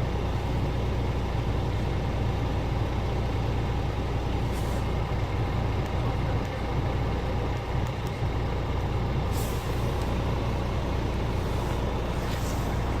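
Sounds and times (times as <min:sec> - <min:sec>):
diesel truck engine idling: 0:00.0 - 0:13.0
air release hiss: 0:09.3 - 0:10.0.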